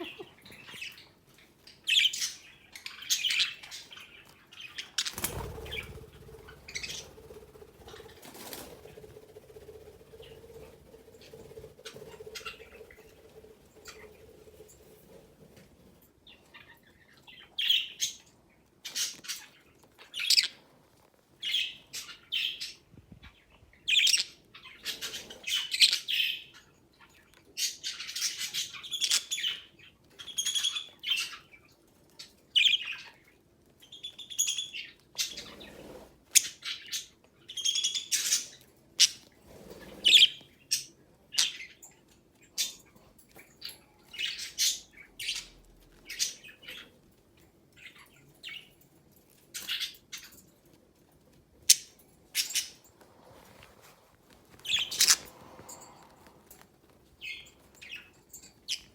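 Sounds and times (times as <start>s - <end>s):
budgerigars chirping: 1.9s - 8.7s, 54.6s - 55.5s.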